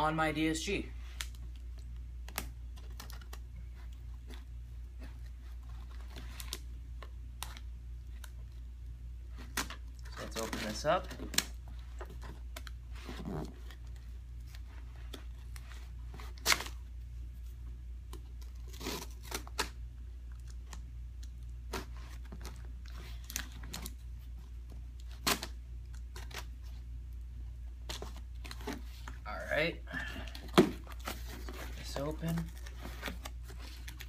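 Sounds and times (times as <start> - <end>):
low steady hum: 0.0 - 34.0
tape and cardboard tearing: 16.2 - 16.8, 18.2 - 19.8, 25.0 - 26.6
cardboard crinkling: 30.2 - 34.0.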